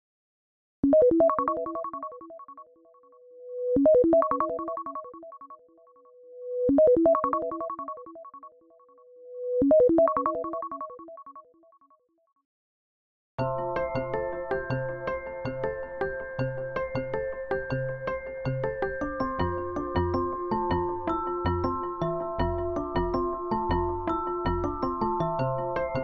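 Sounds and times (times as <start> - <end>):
electronic ringtone: 6.8 - 8.5, 9.7 - 11.4.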